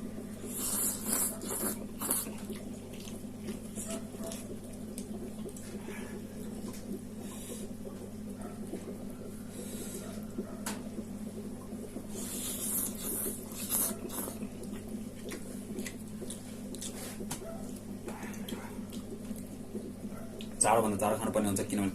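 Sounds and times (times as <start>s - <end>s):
steady low hum: 0.0s - 21.9s
person slurping and chewing noodles: 0.4s - 4.5s, 12.1s - 17.2s.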